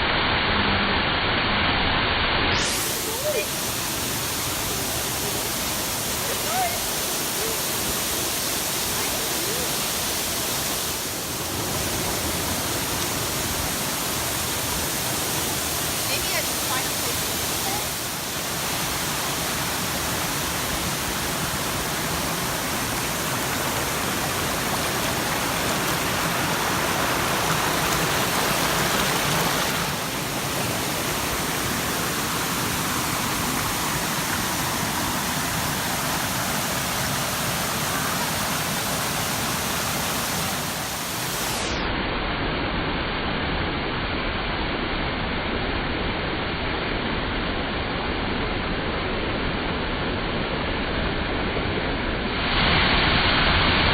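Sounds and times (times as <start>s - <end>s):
waterfall rushing: 2.5s - 41.8s.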